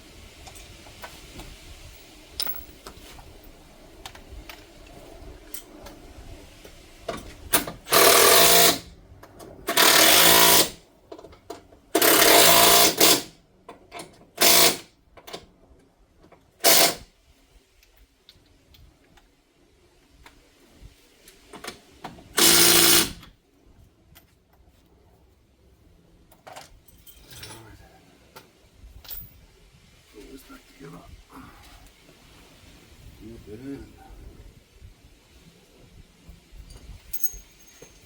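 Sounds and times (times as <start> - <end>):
impact wrench hammering: 9.7 - 10.8, 12.0 - 13.3, 22.4 - 23.2.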